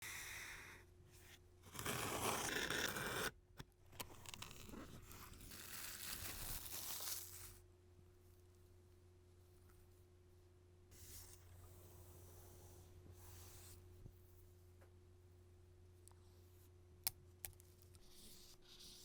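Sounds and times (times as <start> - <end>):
packaging tearing: 4.1 - 7.5.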